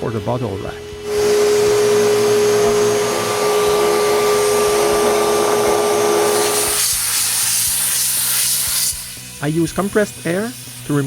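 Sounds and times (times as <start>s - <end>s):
electric power sander whirring: 0.8s - 8.2s.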